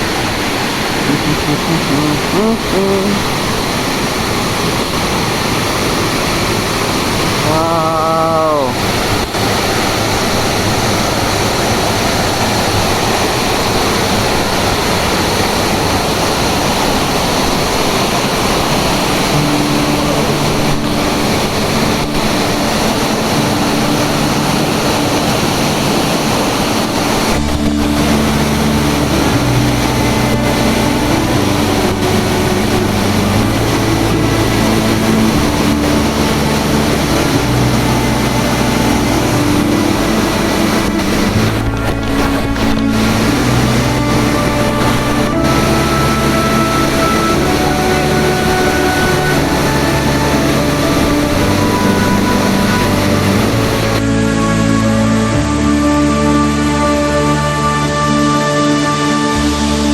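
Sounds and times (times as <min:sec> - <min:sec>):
waterfall rushing: 0:00.0 - 0:59.9
background music with bass line: 0:27.3 - 0:59.9.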